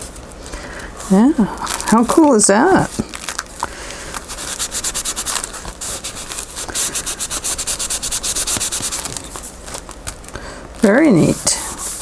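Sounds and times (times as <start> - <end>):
rubbing strokes on paper: 4.2 - 9.6, 11.1 - 12.0.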